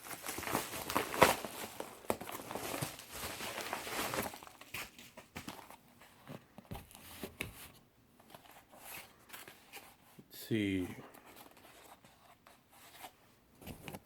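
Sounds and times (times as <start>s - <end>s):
packaging rustling and tearing: 0.0s - 5.8s.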